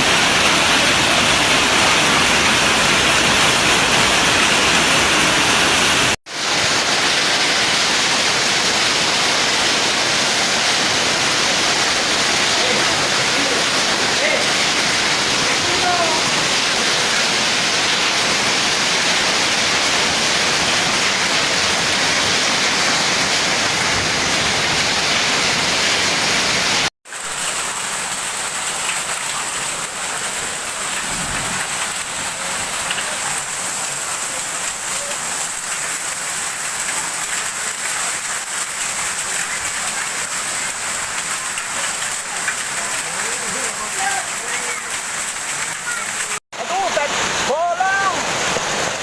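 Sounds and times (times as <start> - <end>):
heavy rain and hail rushing: 0.0 - 49.0
hailstones ticking: 27.1 - 46.4.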